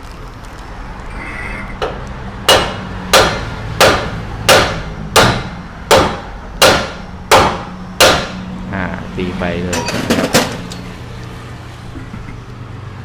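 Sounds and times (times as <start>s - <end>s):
hammer strikes on metal: 1.8s - 8.5s.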